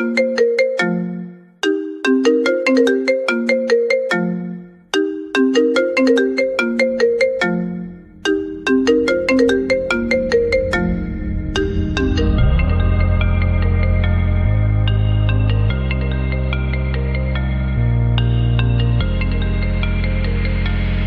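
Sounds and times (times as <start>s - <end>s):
phone ringtone melody: 0.0s - 21.0s
low steady bass: 7.8s - 21.0s.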